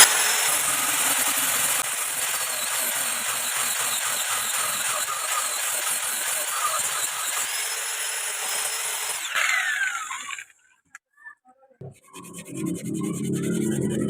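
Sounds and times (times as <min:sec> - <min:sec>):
tool scraping spinning wood: 0:00.0 - 0:10.5
wood lathe motor whine: 0:00.0 - 0:10.5.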